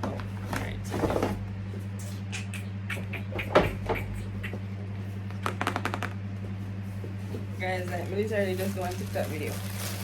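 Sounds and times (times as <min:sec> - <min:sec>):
steady low hum: 0:00.0 - 0:10.0
packaging rustling: 0:08.5 - 0:10.0.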